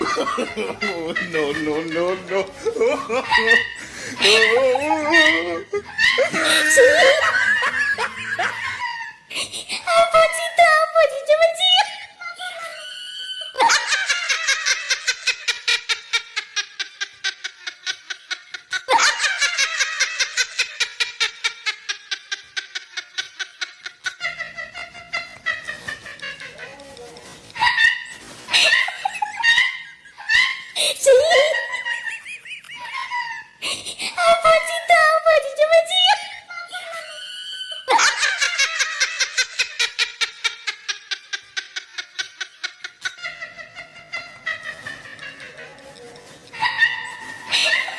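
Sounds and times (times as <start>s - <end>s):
high laughing: 0.0s - 10.2s, 11.8s - 34.8s, 36.1s - 47.9s
person laughing: 4.2s - 10.0s.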